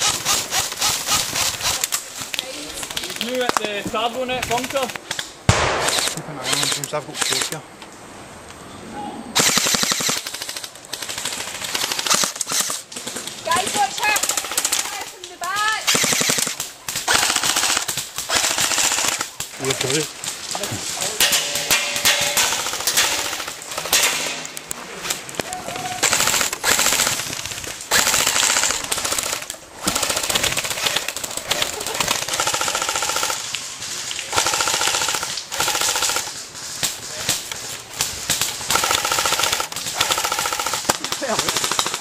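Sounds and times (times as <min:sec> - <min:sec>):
airsoft guns full-auto fire: 0:04.5 - 0:07.6, 0:09.4 - 0:12.8, 0:13.6 - 0:19.5, 0:21.4 - 0:24.5, 0:26.0 - 0:33.5, 0:34.3 - 0:36.3, 0:38.0 - 0:42.0.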